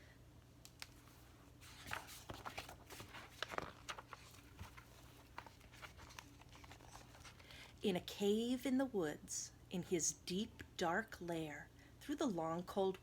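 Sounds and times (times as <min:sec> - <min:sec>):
book pages rustling: 0:00.7 - 0:07.8.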